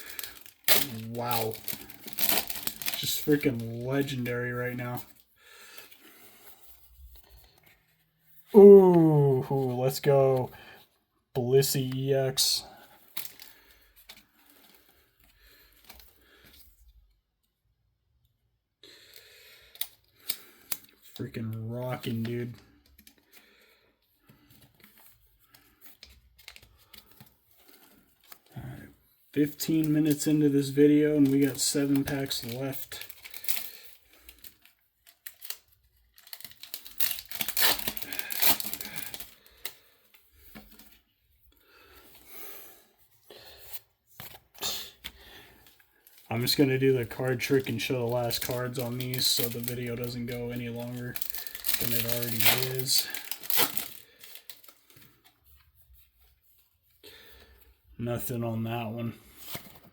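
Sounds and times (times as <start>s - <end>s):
foil pack crinkling: 0.0s - 6.2s, 29.4s - 41.0s, 44.2s - 55.6s
trading cards rustling: 0.0s - 10.6s, 11.6s - 16.7s, 19.7s - 42.4s, 43.0s - 57.7s.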